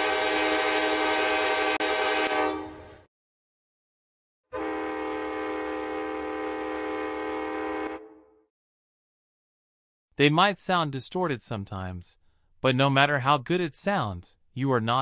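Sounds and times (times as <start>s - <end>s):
locomotive air horn blasts: 0.0s - 3.1s, 4.5s - 8.5s.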